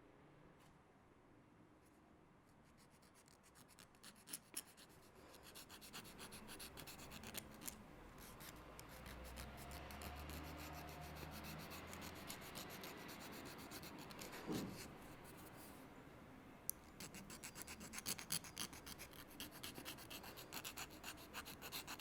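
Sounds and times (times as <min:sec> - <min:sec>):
nail file rasping on fingernail: 0:02.8 - 0:14.8, 0:16.8 - 0:22.0.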